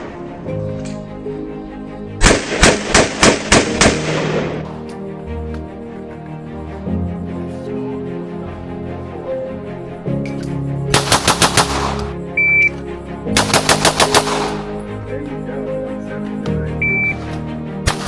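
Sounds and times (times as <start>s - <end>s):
background music: 0.0s - 18.0s
rapid airsoft gun fire: 2.2s - 4.4s, 11.0s - 12.0s, 13.4s - 14.6s.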